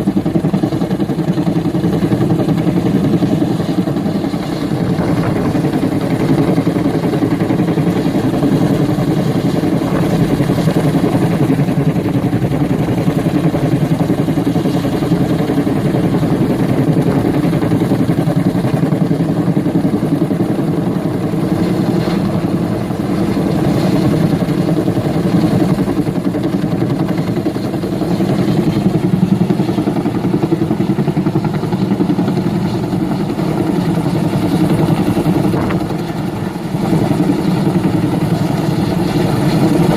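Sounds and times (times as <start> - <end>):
helicopter rotor and turbine pulsing: 0.0 - 39.9.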